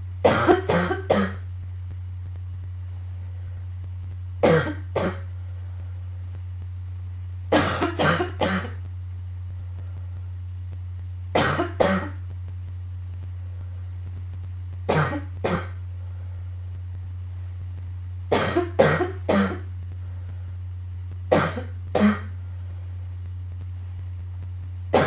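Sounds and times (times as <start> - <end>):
steady low hum: 0.0 - 25.0
girl coughing: 0.3 - 1.4, 7.6 - 8.8, 11.4 - 12.2, 14.9 - 15.8, 18.3 - 19.6, 21.3 - 22.3.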